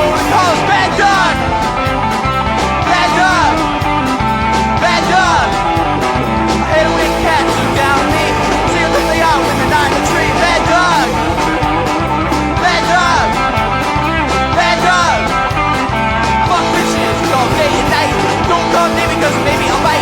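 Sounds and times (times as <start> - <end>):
bass guitar: 0.0 - 20.0
electric guitar lead notes: 0.0 - 20.0
steady drum beat: 0.0 - 20.0.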